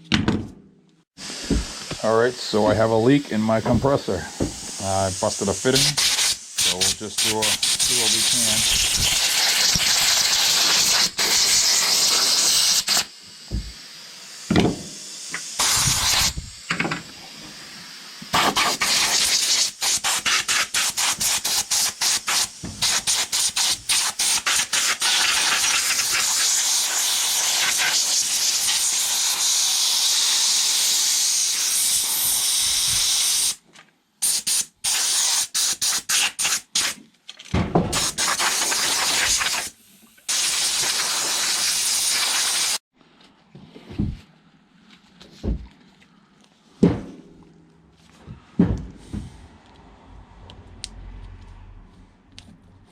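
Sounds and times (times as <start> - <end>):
compressed air hissing from blow gun: 1.2 - 33.6, 34.2 - 37.0, 37.9 - 42.8.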